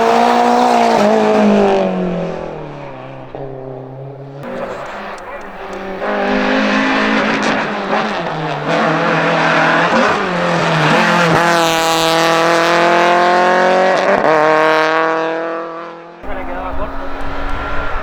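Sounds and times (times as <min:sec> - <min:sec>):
race car engine revving: 0:00.0 - 0:18.0
gear changes: 0:04.4 - 0:13.1, 0:16.2 - 0:18.0.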